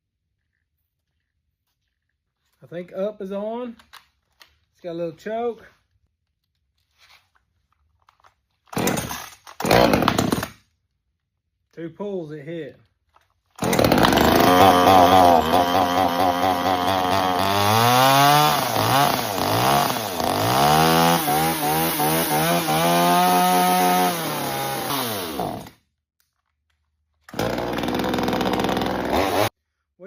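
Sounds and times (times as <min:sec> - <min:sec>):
chainsaw engine running and revving: 0:08.8 - 0:10.4, 0:13.6 - 0:25.7, 0:27.3 - 0:29.5.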